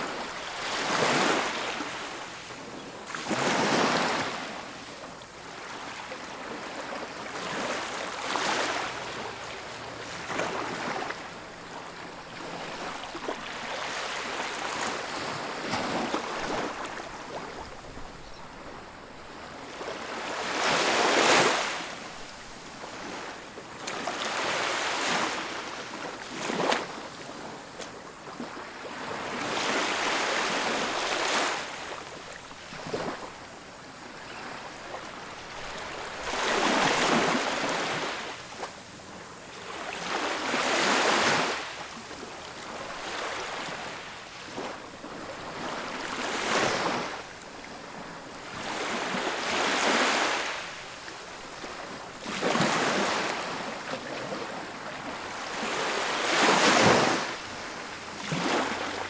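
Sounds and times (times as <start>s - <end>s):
waves breaking on a beach: 0.0s - 59.0s.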